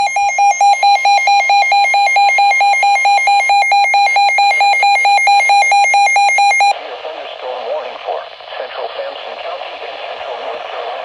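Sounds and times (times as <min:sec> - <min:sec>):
rapid pulsing alarm beeps: 0:00.0 - 0:06.8.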